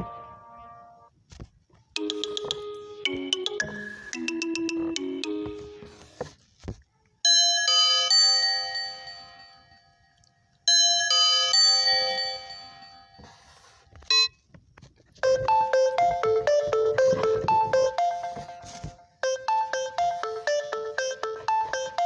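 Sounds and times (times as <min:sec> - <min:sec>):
doorbell chime alarm tone: 0:02.0 - 0:05.8, 0:07.3 - 0:09.7, 0:10.7 - 0:13.3, 0:15.2 - 0:22.0
quick melodic phone jingle: 0:15.2 - 0:22.0.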